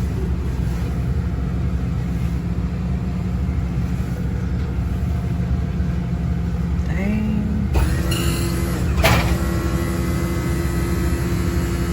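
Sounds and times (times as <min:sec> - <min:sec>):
bus engine running: 0:00.0 - 0:11.9.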